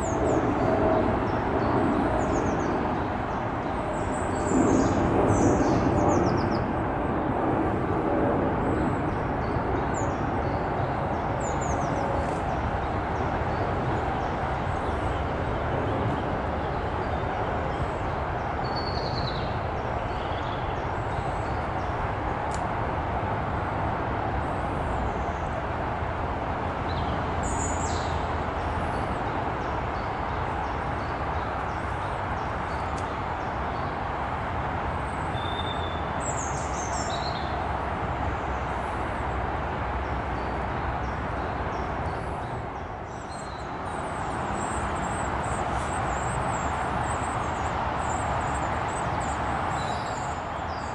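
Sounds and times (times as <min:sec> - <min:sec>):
steady rushing noise: 0:00.0 - 0:18.7, 0:36.0 - 0:50.9.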